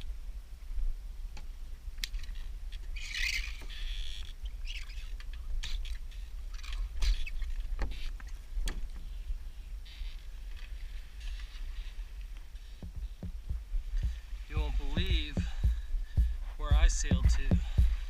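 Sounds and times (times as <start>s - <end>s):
wind rumbling on microphone: 5.4s - 18.0s.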